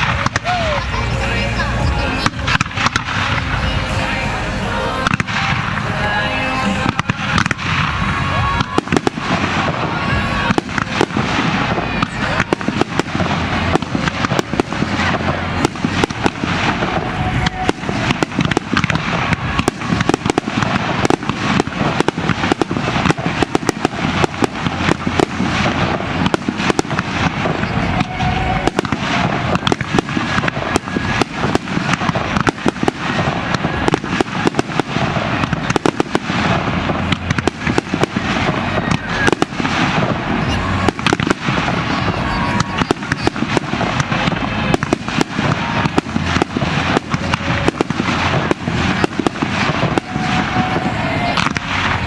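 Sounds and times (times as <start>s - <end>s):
firecracker-like reports: 0.0s - 52.0s
fireworks bursting: 0.0s - 52.0s.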